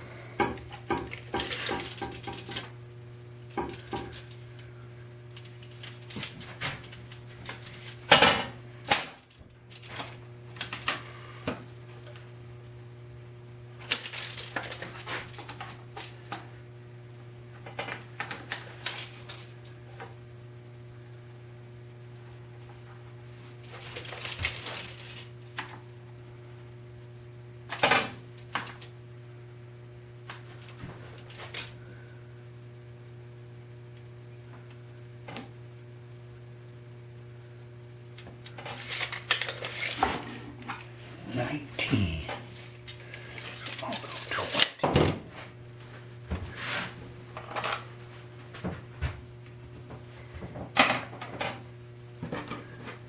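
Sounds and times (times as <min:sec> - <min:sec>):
low electrical hum: 0:00.0 - 0:53.0
hand tools clicking and tapping: 0:00.4 - 0:02.7, 0:03.5 - 0:04.3.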